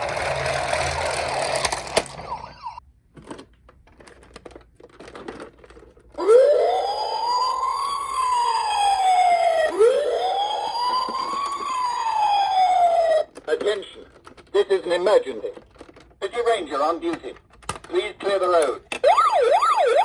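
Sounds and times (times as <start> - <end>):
rattling noise: 0.0 - 2.5
toy siren wailing: 0.9 - 2.8, 6.2 - 13.3, 19.0 - 20.0.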